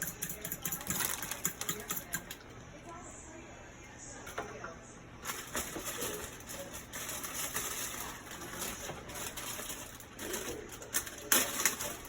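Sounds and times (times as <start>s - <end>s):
utensil stirring wet mix in bowl: 0.0s - 2.8s.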